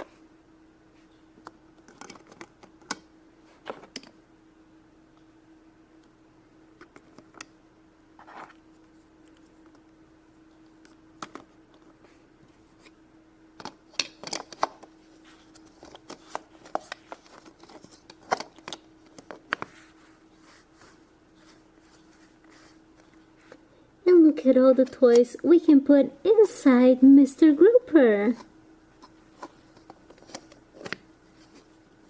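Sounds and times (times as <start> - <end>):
faint steady hum: 0.0 - 32.0
plastic toys clicking and tapping: 1.8 - 3.0.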